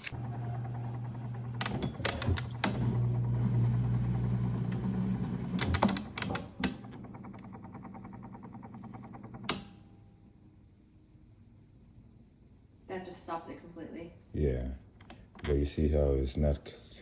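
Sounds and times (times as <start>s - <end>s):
dishwasher motor humming: 0.0s - 10.0s.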